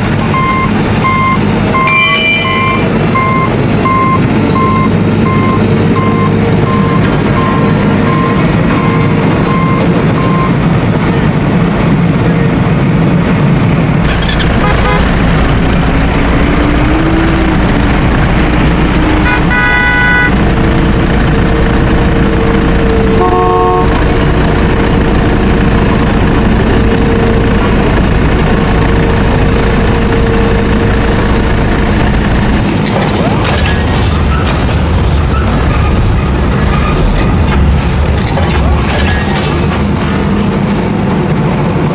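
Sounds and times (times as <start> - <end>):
vehicle engine noise: 0.0 - 41.9
horn toot: 14.5 - 15.2, 19.2 - 20.4, 23.2 - 24.0.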